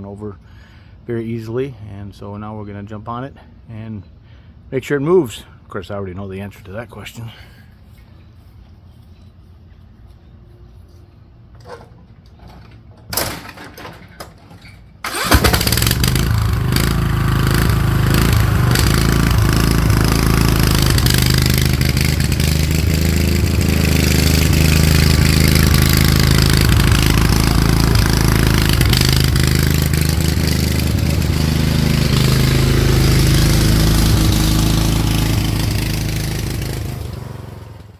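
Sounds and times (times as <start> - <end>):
lawn tractor engine running: 11.5 - 37.9.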